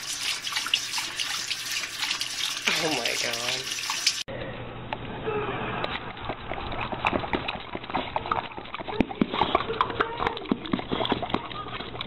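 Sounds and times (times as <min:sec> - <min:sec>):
dog lapping water: 0:00.0 - 0:04.3, 0:06.0 - 0:12.0
stream of water: 0:00.0 - 0:04.3.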